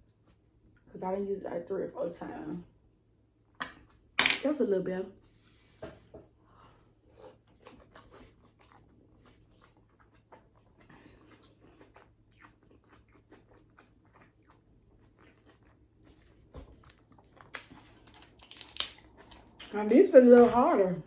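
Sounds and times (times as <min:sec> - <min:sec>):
person chewing and mouth sounds: 0:07.1 - 0:19.8.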